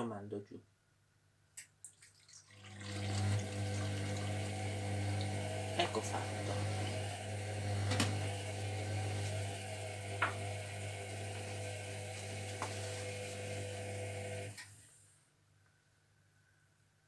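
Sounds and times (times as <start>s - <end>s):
washing machine humming: 2.5s - 14.9s.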